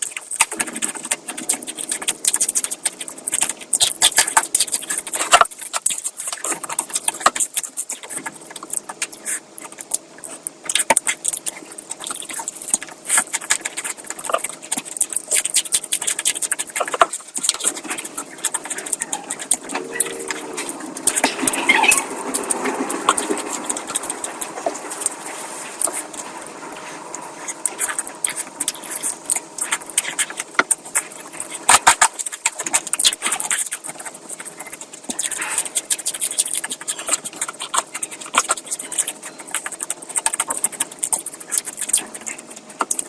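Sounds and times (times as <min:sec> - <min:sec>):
wet chewing and lip smacking: 0:00.0 - 0:43.0
person humming: 0:19.2 - 0:22.4.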